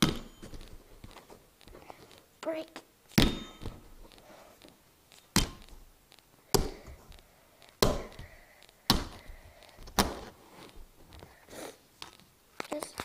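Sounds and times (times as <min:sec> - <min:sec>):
hard strikes on a phone: 0:03.2 - 0:03.8.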